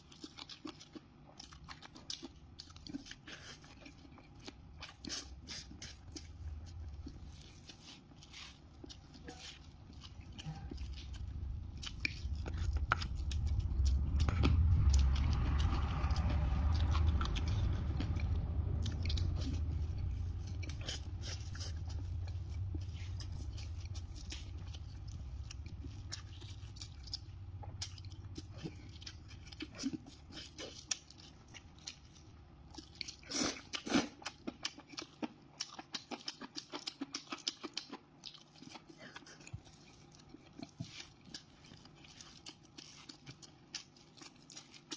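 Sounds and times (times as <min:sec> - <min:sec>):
person chewing and crunching food: 0:00.0 - 0:44.9
low rumble: 0:04.7 - 0:33.2.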